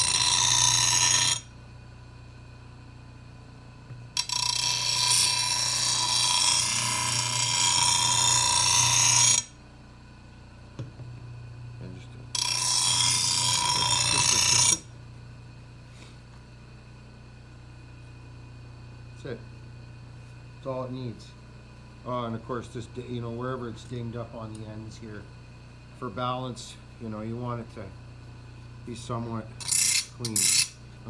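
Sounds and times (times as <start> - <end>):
blade grinding on stone wheel: 0.0 - 1.5, 4.2 - 9.5, 12.3 - 14.9, 29.6 - 30.8
grinder motor humming: 0.0 - 1.5, 3.9 - 9.5, 10.8 - 15.3.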